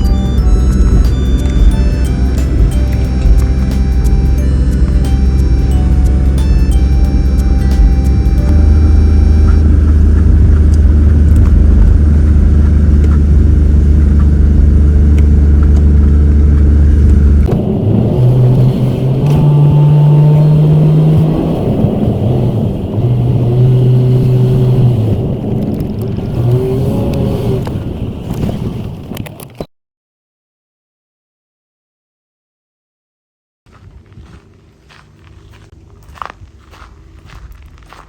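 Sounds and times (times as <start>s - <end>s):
large engine revving: 0.0s - 28.7s.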